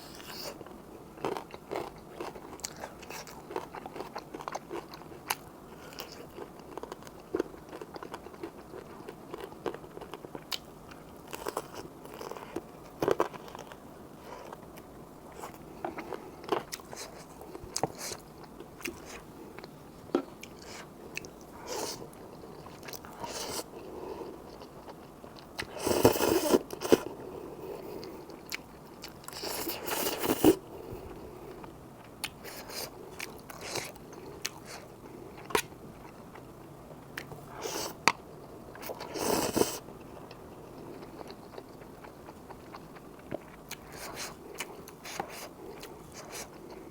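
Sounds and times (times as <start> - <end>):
slurping noodles: 25.8 - 27.0.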